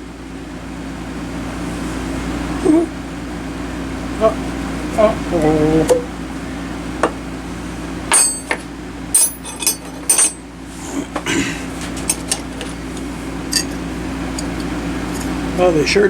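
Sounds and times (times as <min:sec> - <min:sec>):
steady hum: 0:00.0 - 0:16.0
metal pliers clinking: 0:08.1 - 0:08.6, 0:09.2 - 0:10.4, 0:13.5 - 0:13.8.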